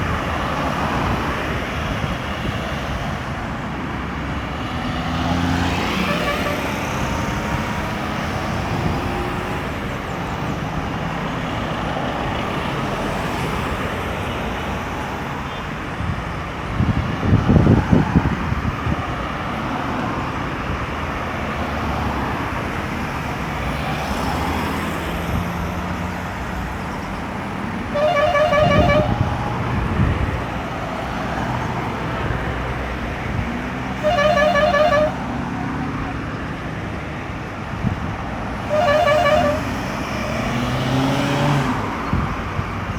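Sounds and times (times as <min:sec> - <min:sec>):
heavy vehicle rumble: 0:00.0 - 0:42.9
road traffic: 0:00.0 - 0:42.9
car horn toots: 0:05.8 - 0:07.0, 0:27.9 - 0:29.6, 0:34.0 - 0:35.4, 0:38.6 - 0:40.1.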